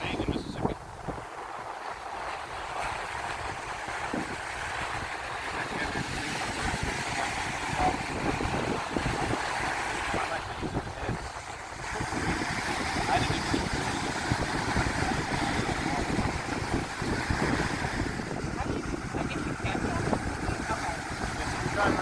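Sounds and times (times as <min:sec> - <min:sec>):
surf washing on beach: 0:00.0 - 0:22.0
wind buffeting microphone: 0:00.0 - 0:22.0.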